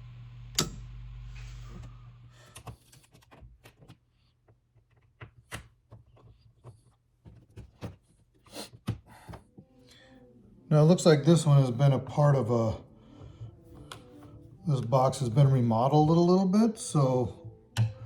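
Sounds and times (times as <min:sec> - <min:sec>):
steady low hum: 0:00.0 - 0:02.6.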